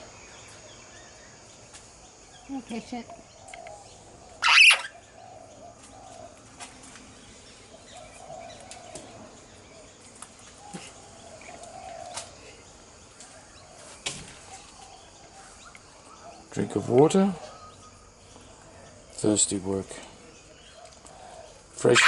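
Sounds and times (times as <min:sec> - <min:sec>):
parrot loud bright call: 0:04.4 - 0:05.0.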